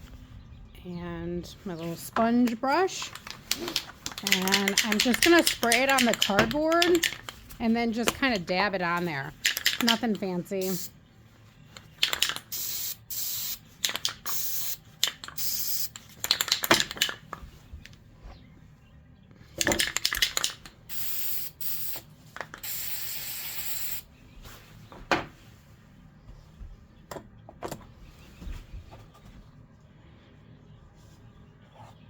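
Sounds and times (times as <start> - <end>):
metallic clicking and rattling: 2.5 - 7.4
spray-paint can hissing: 10.6 - 10.9, 12.5 - 13.6, 14.2 - 14.8, 15.4 - 15.9, 20.9 - 22.0, 22.6 - 24.0.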